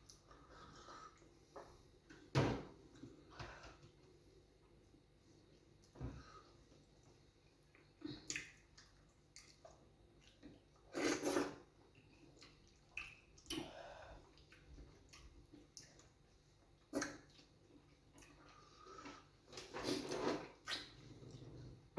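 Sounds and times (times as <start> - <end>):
wet eating smacks and squelches: 7.4 - 19.2.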